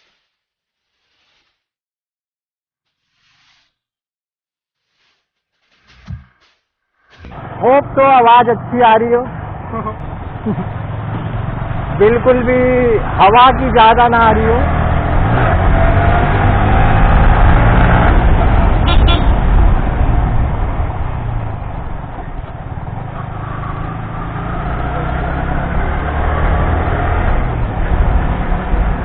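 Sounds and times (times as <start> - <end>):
motorcycle engine running: 9.3 - 13.7
wind rush on microphone: 14.8 - 23.1, 26.4 - 29.0.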